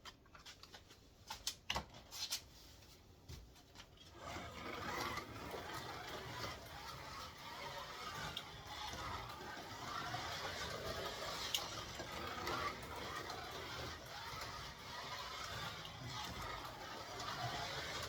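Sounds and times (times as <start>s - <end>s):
slot car running on track: 4.5s - 18.0s.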